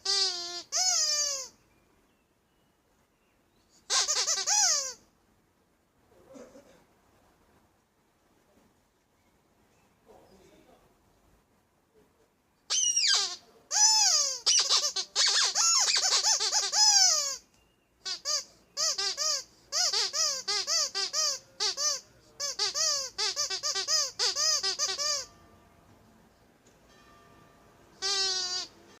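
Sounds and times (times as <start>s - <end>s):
rubber duck toy squeaking: 0.0s - 1.6s, 3.8s - 5.0s, 12.7s - 25.3s, 28.0s - 28.8s.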